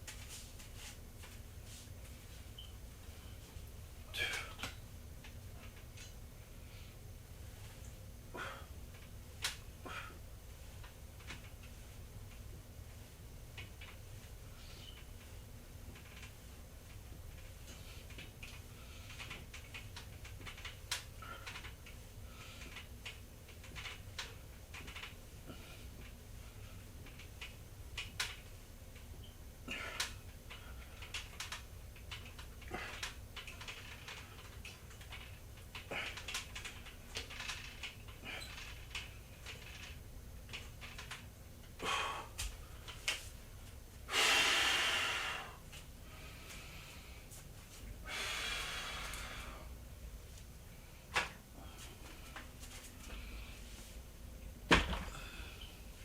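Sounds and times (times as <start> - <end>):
person breathing: 41.8 - 42.9, 44.1 - 47.4, 48.0 - 49.8, 53.0 - 54.0, 55.0 - 56.0.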